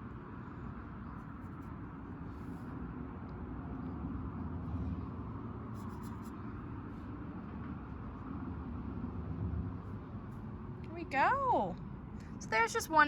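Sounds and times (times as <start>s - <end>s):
paintbrush strokes on paper: 5.7s - 7.0s.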